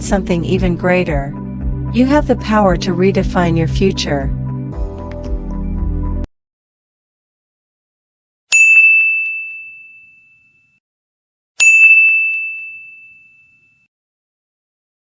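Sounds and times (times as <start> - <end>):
background music: 0.0 - 6.3
bright bell dings: 8.5 - 10.8, 11.6 - 13.9.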